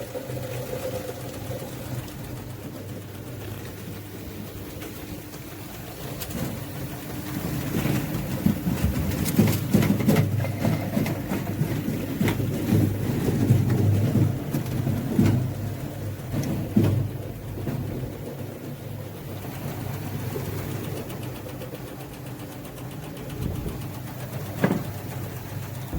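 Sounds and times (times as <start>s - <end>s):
grinding mill running: 0.0s - 25.9s
apples knocking in mill: 0.8s - 18.1s.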